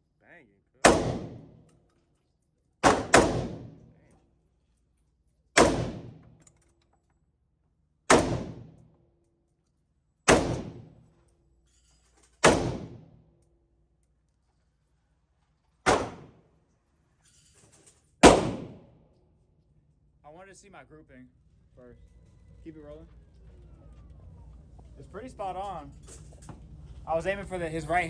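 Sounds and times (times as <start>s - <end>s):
gunshots: 0.8s - 1.6s, 2.8s - 3.9s, 5.6s - 6.2s, 8.1s - 8.8s, 10.3s - 11.0s, 12.4s - 13.2s, 15.9s - 16.4s, 18.2s - 19.0s.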